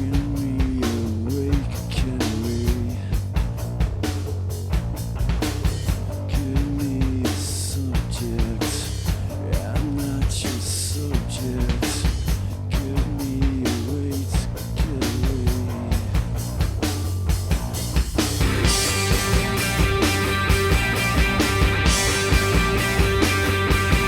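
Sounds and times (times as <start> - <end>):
drum kit beat: 0.0 - 24.0
guitar: 14.3 - 24.0.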